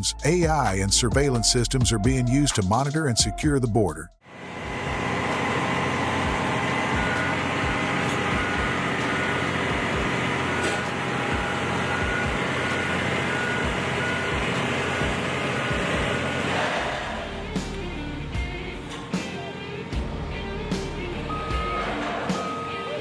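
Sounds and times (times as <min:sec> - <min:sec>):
heavy machinery engine running: 0:04.3 - 0:23.0
reversing alarm beeping: 0:04.6 - 0:16.6, 0:21.3 - 0:23.0.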